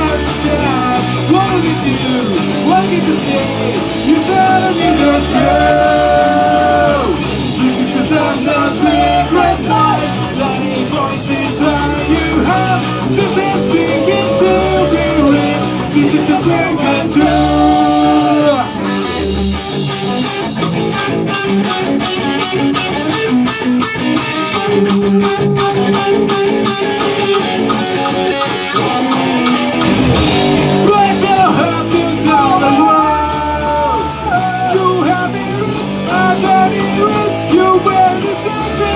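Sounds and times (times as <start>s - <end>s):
person singing: 0.0s - 19.2s, 30.8s - 38.9s
rock song: 0.0s - 38.9s
drum hits: 1.3s - 32.7s.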